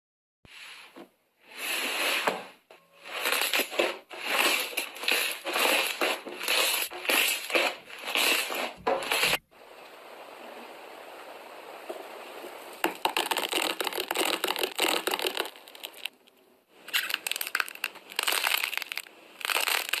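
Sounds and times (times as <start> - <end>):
slime squishing: 3.0 - 9.4, 12.8 - 20.0.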